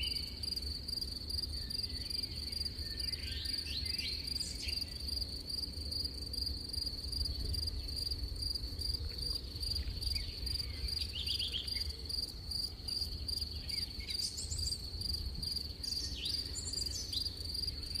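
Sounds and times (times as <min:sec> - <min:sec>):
crickets chirring: 0:00.0 - 0:18.0.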